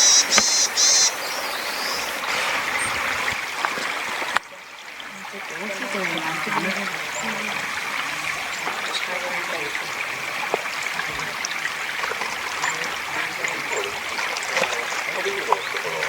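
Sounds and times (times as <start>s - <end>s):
small bird singing: 0.0s - 3.0s
stream rushing: 0.0s - 16.0s.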